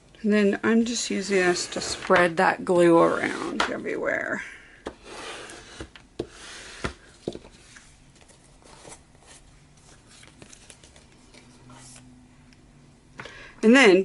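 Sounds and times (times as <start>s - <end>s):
paper rustling: 7.4s - 12.1s.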